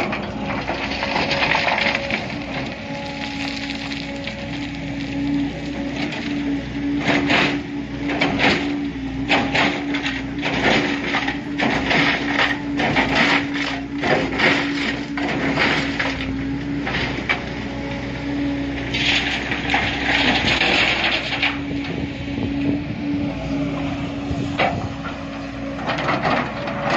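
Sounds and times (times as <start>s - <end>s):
excavator diesel engine: 0.0s - 26.9s
rushing scraping noise: 18.8s - 26.9s.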